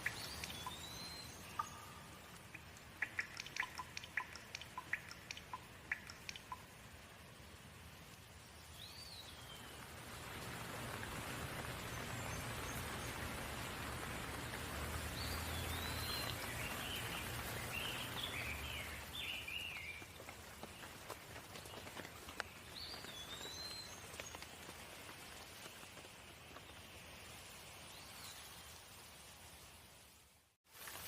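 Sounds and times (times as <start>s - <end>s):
bird chirps: 0.0s - 6.6s
steady rain falling: 0.0s - 31.0s.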